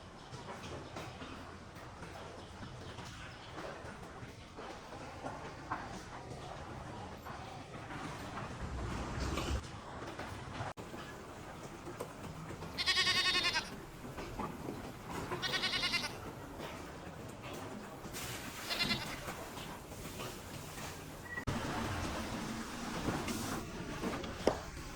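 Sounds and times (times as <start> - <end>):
goats bleating: 12.7 - 14.5, 15.1 - 16.3, 18.6 - 19.3.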